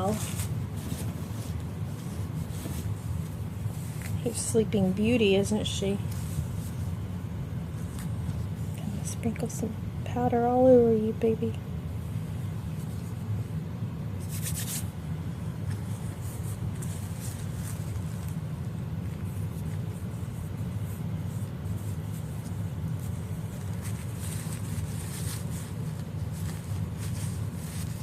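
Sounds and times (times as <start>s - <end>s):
powder brushing and shaking: 0.0s - 7.0s, 14.2s - 15.0s, 15.6s - 28.0s
steady low hum: 0.0s - 28.0s.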